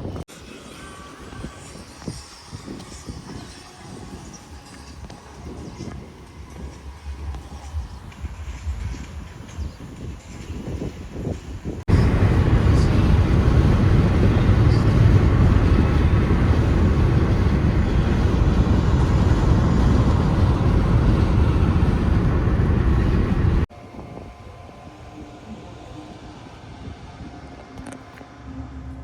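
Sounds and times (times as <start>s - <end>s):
vehicle rumbling in motion: 11.9s - 23.7s.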